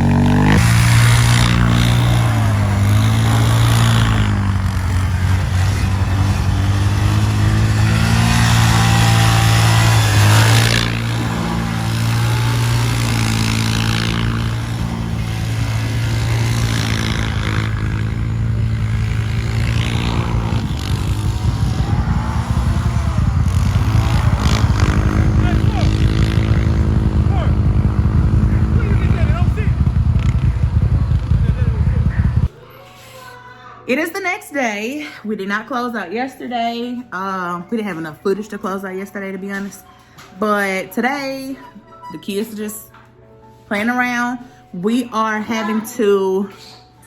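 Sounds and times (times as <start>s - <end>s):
atv engine running: 0.0s - 32.5s.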